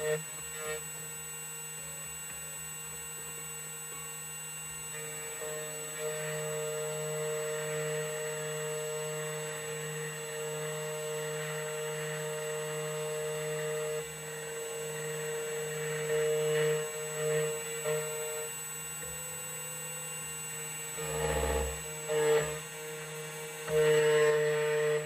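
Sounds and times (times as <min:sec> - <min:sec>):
key cutting machine motor whine: 0:00.0 - 0:25.0
cutter grinding hiss on metal: 0:19.7 - 0:25.0.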